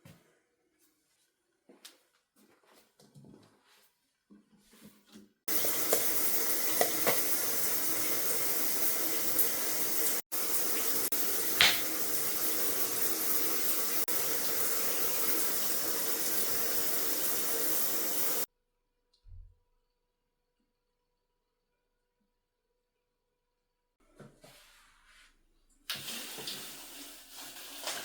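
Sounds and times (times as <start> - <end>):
running water: 5.5 - 18.5, 25.9 - 28.0.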